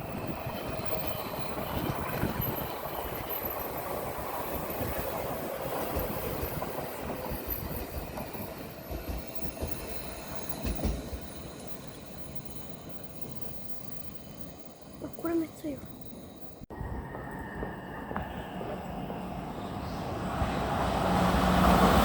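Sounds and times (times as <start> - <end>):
train wheels rumbling and clacking: 0.0 - 14.0.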